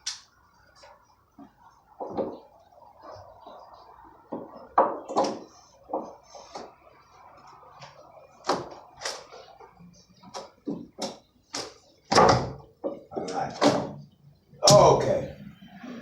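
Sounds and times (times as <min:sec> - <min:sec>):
wooden boards knocked and pried off: 0:04.3 - 0:06.7, 0:10.6 - 0:14.0.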